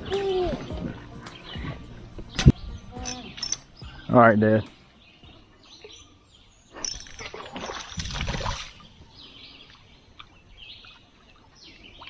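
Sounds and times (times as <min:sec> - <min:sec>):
water splashing: 0:00.0 - 0:03.8, 0:06.8 - 0:12.0
faint bird chirps: 0:08.7 - 0:12.0.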